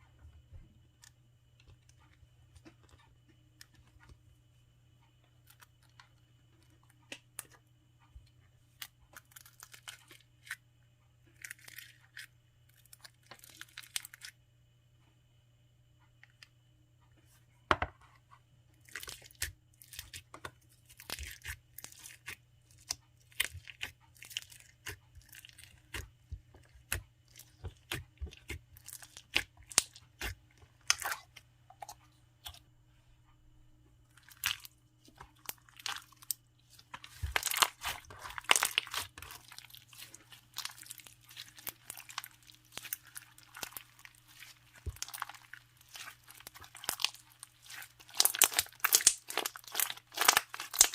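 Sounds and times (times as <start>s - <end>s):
slime squishing: 18.8s - 32.7s, 34.1s - 50.9s.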